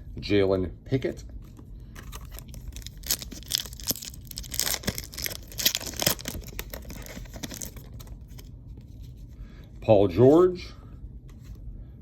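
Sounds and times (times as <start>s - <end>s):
wrapper tearing and crinkling: 2.0s - 8.5s.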